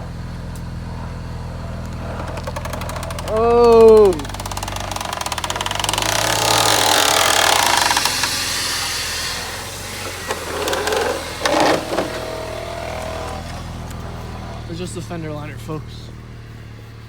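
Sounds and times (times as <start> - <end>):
car engine idling: 0.0 - 17.0
scraping rustling handling noise: 9.7 - 14.7.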